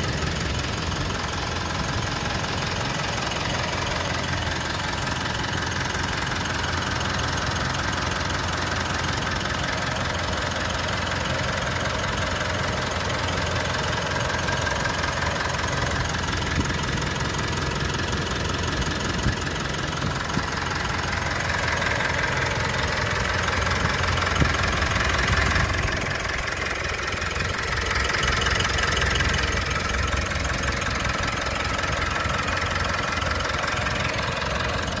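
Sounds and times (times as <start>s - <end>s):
diesel engine idling: 0.0s - 35.0s.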